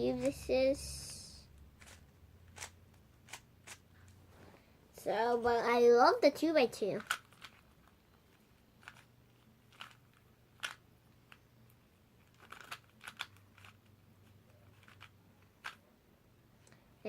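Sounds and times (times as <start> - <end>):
speed cube clicking: 1.8 - 3.8, 7.0 - 8.0, 8.8 - 9.1, 9.7 - 11.4, 12.2 - 13.9, 14.7 - 15.8.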